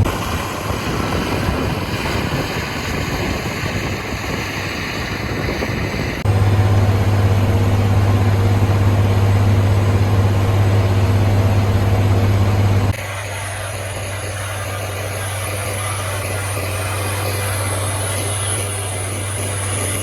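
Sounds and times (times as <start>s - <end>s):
tractor diesel engine running: 6.2s - 20.0s.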